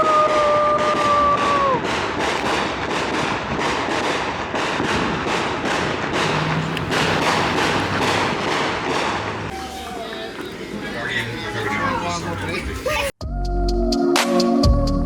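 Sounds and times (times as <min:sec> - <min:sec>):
fireworks crackling and banging: 0:00.0 - 0:13.2
whistle-like tone: 0:09.5 - 0:11.5.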